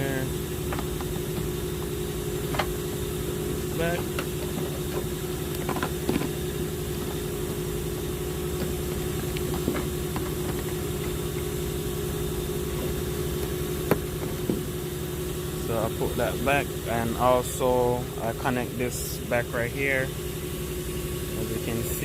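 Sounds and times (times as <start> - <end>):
engine idling: 0.0 - 22.0
sharp clicks and knocks: 0.6 - 1.9, 4.0 - 6.4, 8.6 - 11.5.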